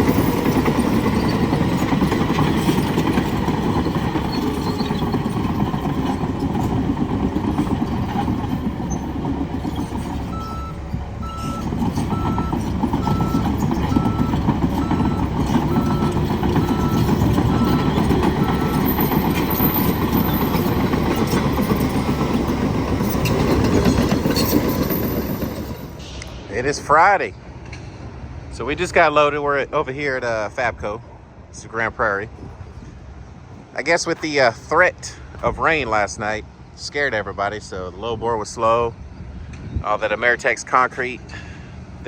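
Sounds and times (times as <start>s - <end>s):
heavy diesel engine running: 0.0s - 26.9s
backup alarm beeping: 8.8s - 23.8s.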